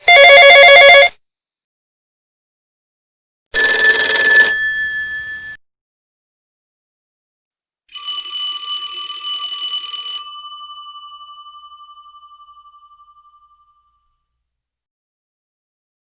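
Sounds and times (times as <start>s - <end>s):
electric alarm bell ringing: 0.1s - 1.1s, 3.6s - 5.6s, 7.9s - 14.2s.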